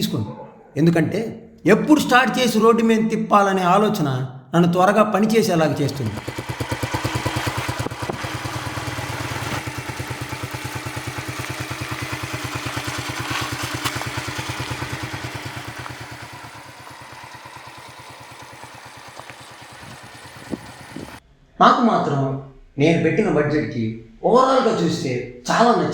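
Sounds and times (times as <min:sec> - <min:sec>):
motorcycle engine running: 0:05.9 - 0:21.2.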